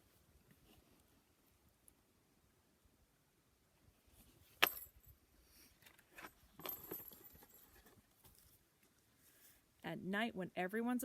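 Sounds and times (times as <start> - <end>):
rustling clatter with metallic ring: 6.6 - 7.9.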